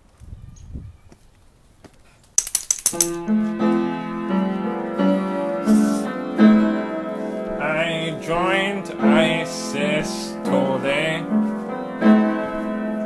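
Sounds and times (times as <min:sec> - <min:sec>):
percussion rattle: 0:02.4 - 0:03.3.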